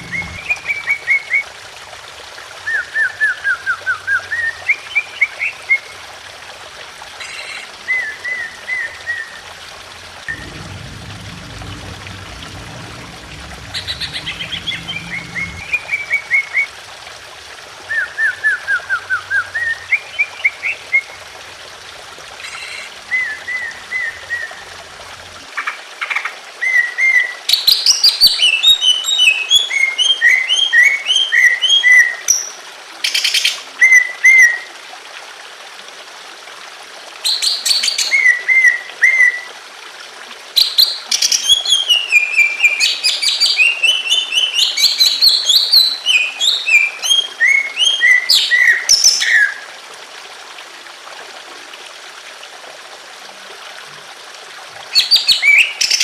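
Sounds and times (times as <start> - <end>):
water trickling: 0.0 - 56.0.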